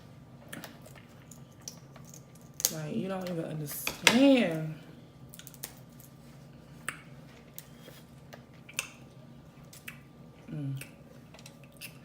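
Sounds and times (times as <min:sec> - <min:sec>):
person humming mm: 0:10.5 - 0:10.9.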